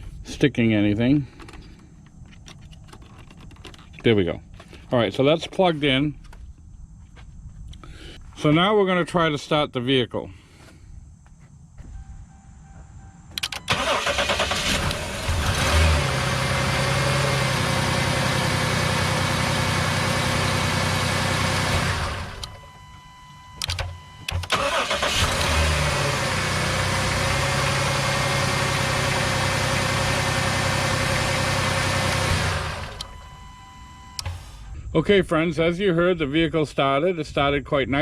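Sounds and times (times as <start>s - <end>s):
truck engine cranking and running: 13.2s - 22.8s, 23.6s - 34.8s
short clicks: 13.3s - 13.7s.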